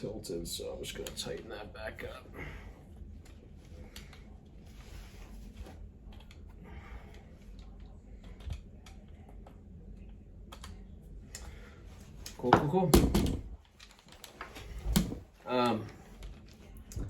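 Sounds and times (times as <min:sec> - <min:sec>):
soft rubbing of plastic parts: 0:02.8 - 0:12.5
faint clicks of plastic and metal: 0:13.6 - 0:17.0.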